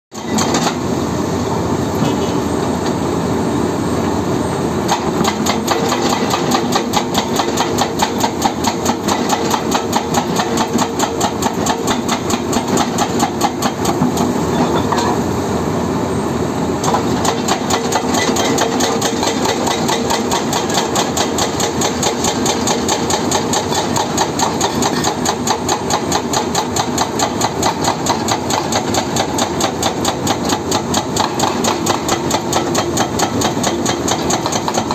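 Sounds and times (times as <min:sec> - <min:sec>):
hydraulic breaker hammering rock: 0:00.2 - 0:00.8, 0:04.9 - 0:15.2, 0:16.8 - 0:34.9
excavator engine running: 0:16.7 - 0:34.9.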